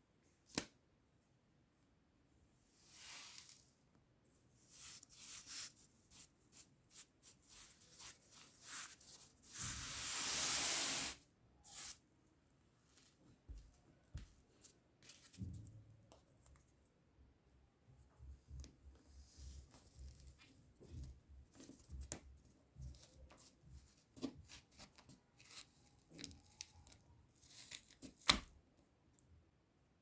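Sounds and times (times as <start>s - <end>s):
grainy scrapes of kinetic sand: 7.5s - 11.2s.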